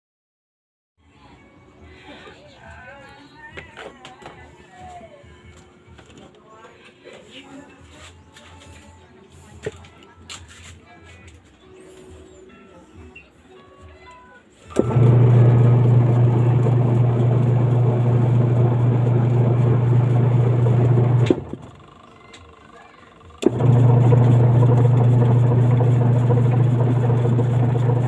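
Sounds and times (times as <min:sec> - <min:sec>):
washing machine motor humming: 0:14.7 - 0:22.0, 0:23.3 - 0:28.0.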